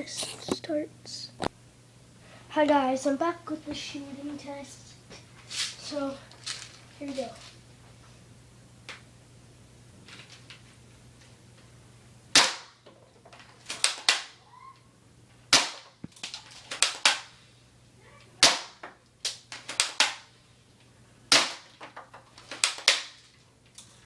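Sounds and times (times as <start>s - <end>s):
airsoft rifle shots: 12.3s - 12.8s, 13.7s - 14.4s, 15.5s - 16.0s, 16.7s - 17.3s, 18.4s - 18.8s, 21.3s - 21.7s.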